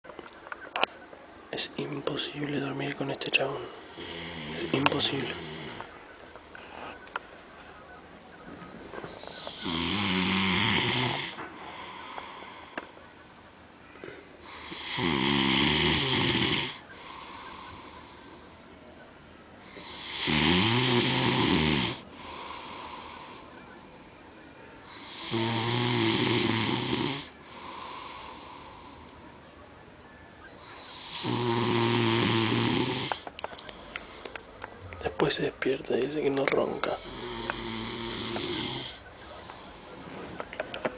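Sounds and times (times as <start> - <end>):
man snoring loudly: 3.9 - 5.9, 9.2 - 12.8, 14.4 - 18.2, 19.7 - 23.4, 24.8 - 29.2, 30.7 - 33.2, 36.9 - 39.9.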